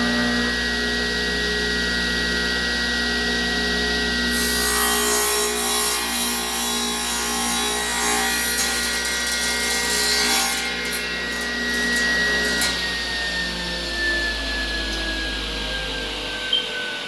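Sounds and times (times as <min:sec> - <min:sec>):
table saw motor whine: 0:00.0 - 0:17.0
saw blade cutting wood: 0:04.3 - 0:12.9.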